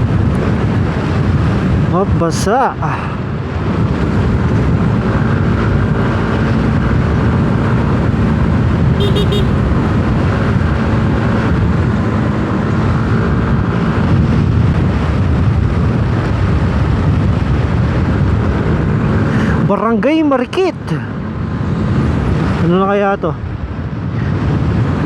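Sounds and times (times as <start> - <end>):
road and wind noise: 0.0 - 25.0
scooter engine running: 9.0 - 10.2.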